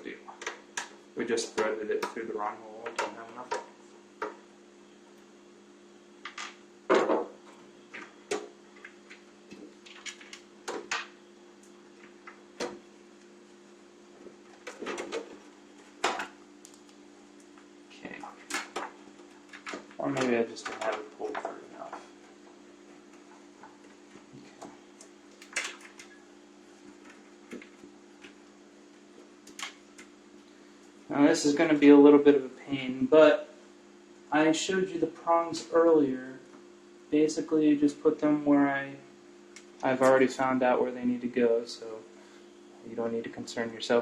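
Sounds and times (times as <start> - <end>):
steady low hum: 0.0 - 44.0
clicks and rattles of handling cable: 7.9 - 12.8, 14.4 - 17.6, 18.3 - 22.0, 23.1 - 26.2, 29.4 - 30.1.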